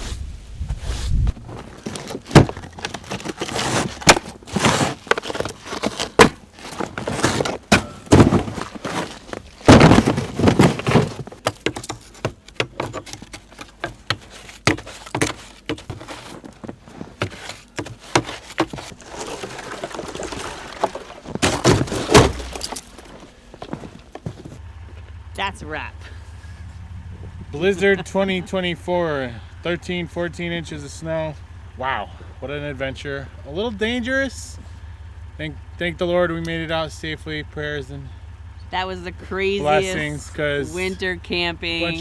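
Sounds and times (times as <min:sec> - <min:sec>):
rustling: 0:00.0 - 0:24.6
knocks and thumps: 0:01.3 - 0:24.6.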